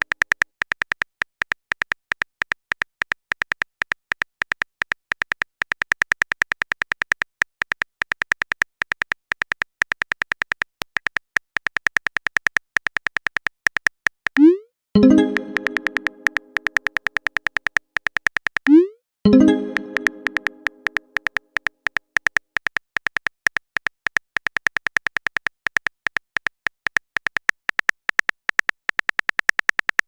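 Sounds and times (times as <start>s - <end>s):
keyboard typing clicks: 13.0s - 30.0s.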